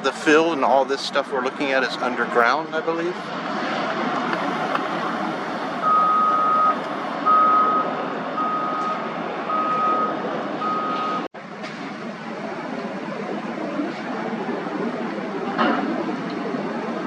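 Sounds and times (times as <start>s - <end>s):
site and traffic noise: 0.0s - 17.0s
vehicle backup alarm beeping: 5.8s - 11.3s.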